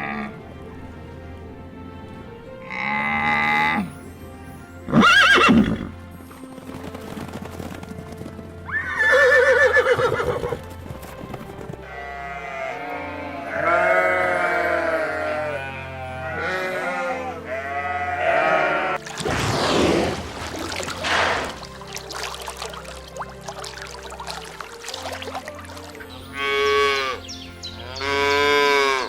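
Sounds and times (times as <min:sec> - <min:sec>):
animal bleat: 0:00.0 - 0:00.3, 0:11.8 - 0:19.0, 0:26.3 - 0:29.0
background music: 0:00.0 - 0:29.0.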